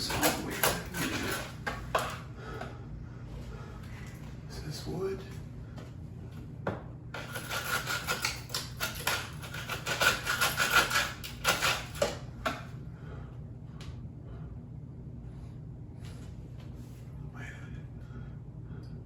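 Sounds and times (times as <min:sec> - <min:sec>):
tool scraping and chipping wall: 0:00.0 - 0:02.7, 0:07.1 - 0:12.7.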